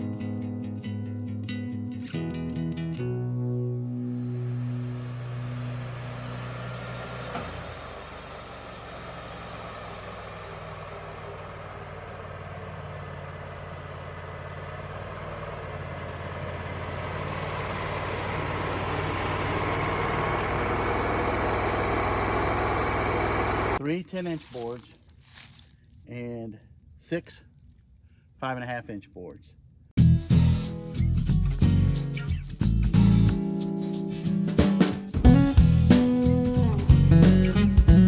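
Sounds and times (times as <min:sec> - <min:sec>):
engine running: 0:03.8 - 0:23.8.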